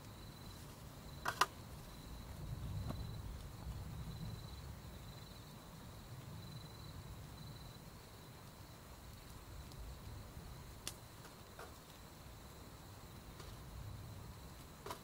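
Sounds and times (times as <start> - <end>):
campfire crackling: 0.0 - 15.0
high insect trill: 0.0 - 15.0
sharp pops of fire: 1.1 - 1.8, 8.4 - 12.2, 13.1 - 15.0.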